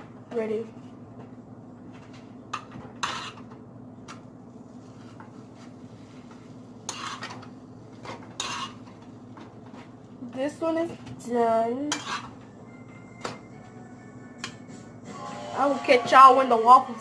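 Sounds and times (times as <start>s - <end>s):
utensil scraping a skillet: 2.6s - 3.5s, 4.8s - 9.1s, 11.9s - 12.4s.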